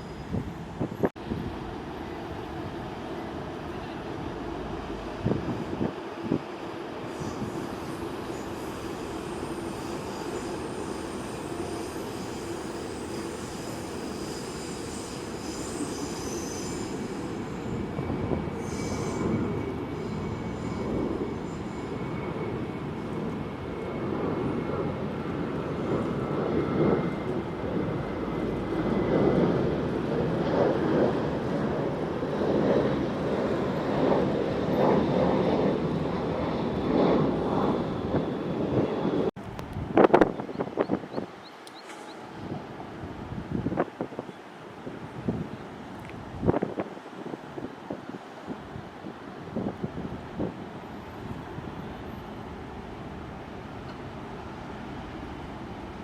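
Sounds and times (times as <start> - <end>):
jet engine rumble: 17.0 - 41.4.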